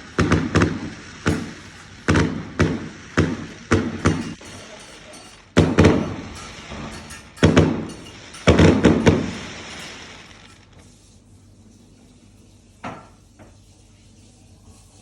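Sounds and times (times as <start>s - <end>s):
fireworks bangs: 0.0s - 10.8s.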